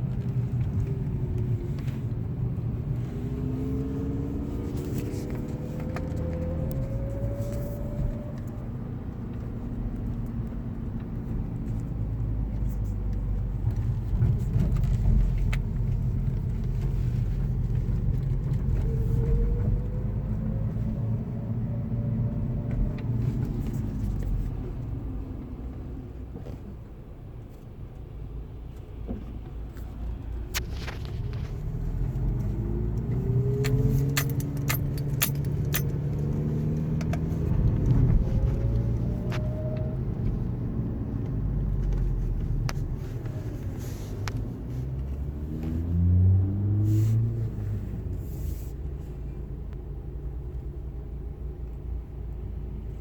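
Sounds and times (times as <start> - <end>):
car engine and road rumble: 0.0 - 53.0
metallic clicks and jingles: 33.1 - 36.5.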